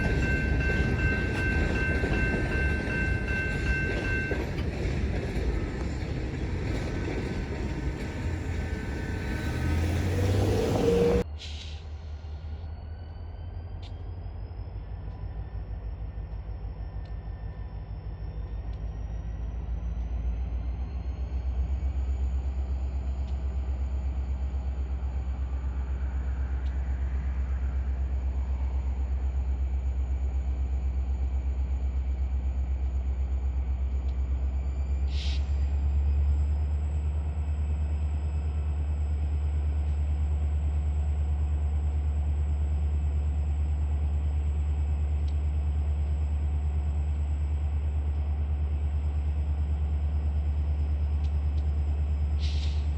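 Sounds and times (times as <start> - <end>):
low vehicle rumble: 0.0 - 52.9
brief high hiss: 52.4 - 52.9.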